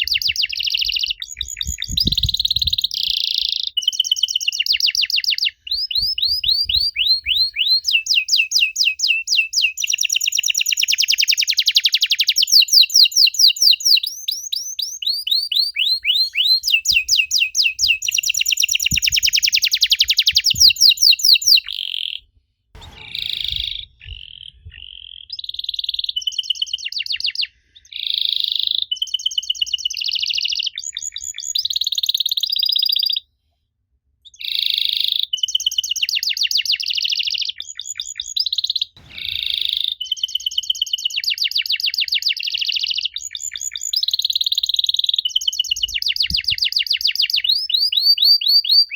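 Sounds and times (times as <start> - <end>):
canary singing trills: 0.0 - 22.2.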